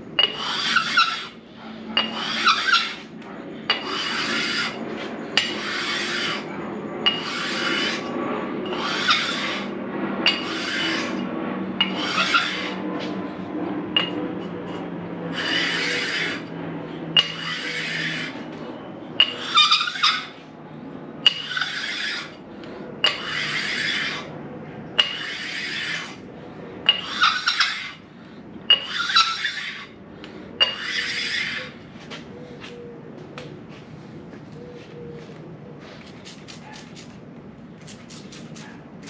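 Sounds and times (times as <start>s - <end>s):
sharpening stone scraping metal: 0.2s - 1.3s, 2.0s - 3.1s, 3.7s - 4.8s, 5.4s - 6.5s, 7.1s - 9.6s, 10.3s - 11.2s, 11.8s - 12.8s, 14.0s - 16.4s, 17.2s - 18.4s, 19.2s - 20.3s, 21.2s - 22.4s, 23.0s - 24.3s, 25.0s - 26.1s, 26.9s - 28.0s, 28.7s - 30.0s, 30.6s - 31.7s.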